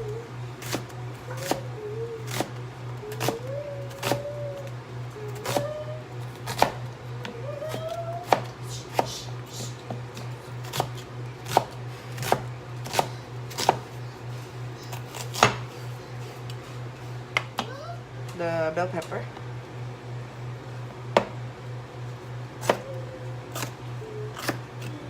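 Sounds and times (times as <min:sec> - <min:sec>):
knife chopping onion on board: 0:00.6 - 0:04.7, 0:05.3 - 0:14.0, 0:14.9 - 0:15.8, 0:22.6 - 0:22.9, 0:23.5 - 0:24.9.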